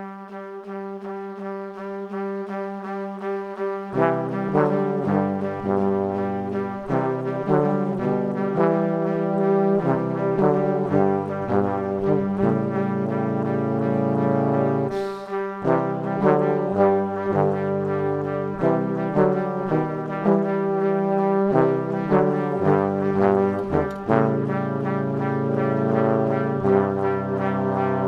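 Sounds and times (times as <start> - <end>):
background music with held chords: 0.0 - 28.0.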